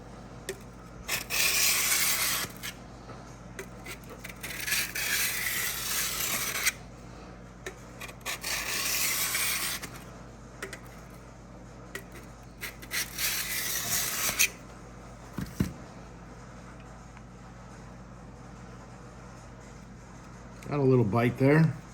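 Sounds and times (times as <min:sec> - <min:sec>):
blade scraping on sharpening block: 0:01.1 - 0:02.8, 0:03.8 - 0:06.8, 0:08.0 - 0:10.0, 0:12.0 - 0:14.6.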